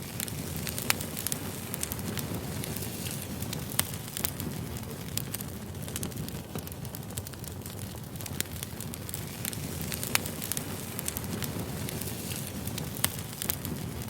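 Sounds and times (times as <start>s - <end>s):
firewood crackling: 0.0s - 14.0s.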